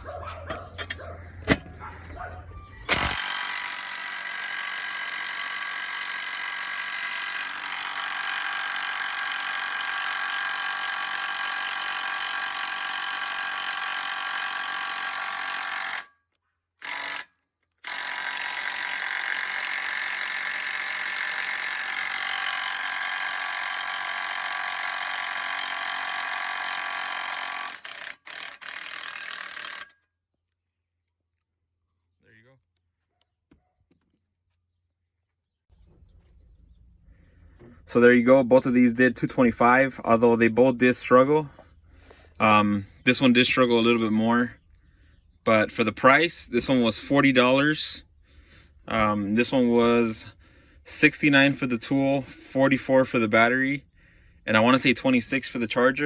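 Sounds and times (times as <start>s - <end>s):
impact wrench hammering on bolt: 2.9s - 16.1s, 16.8s - 29.9s.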